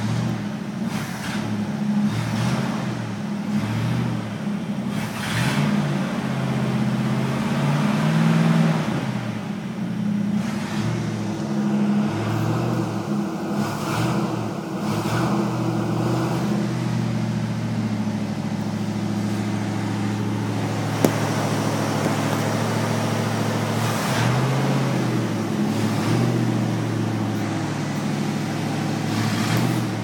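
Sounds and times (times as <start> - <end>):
car engine idling: 0.0 - 30.0.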